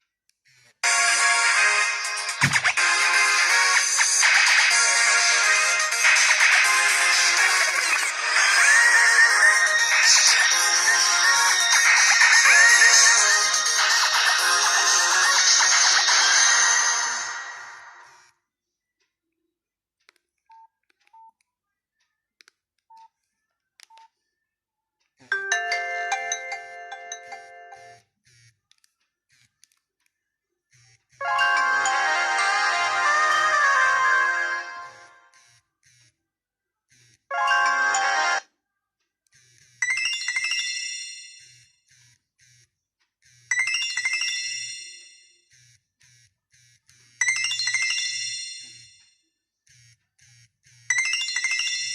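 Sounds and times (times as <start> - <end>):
bright chiming ringtone melody: 0.8 - 18.1, 25.3 - 28.0, 31.2 - 35.4, 37.3 - 38.5, 39.8 - 41.7, 43.5 - 45.5, 47.2 - 49.2, 50.9 - 51.9.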